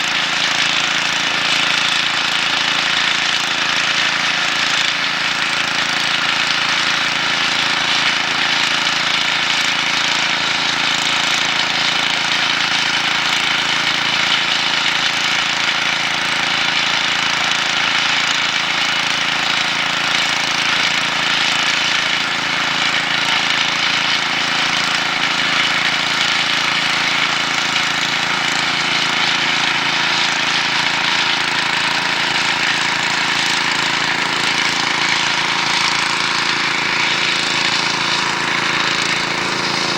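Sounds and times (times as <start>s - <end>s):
engine droning steadily: 16.9s - 39.9s.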